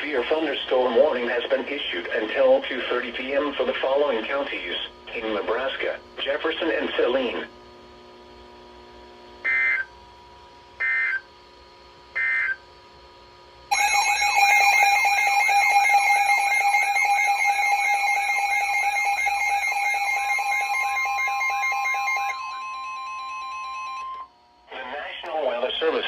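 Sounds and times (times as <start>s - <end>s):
steady high tone: 13.7s - 25.9s
digital data bursts: 14.2s - 23.9s.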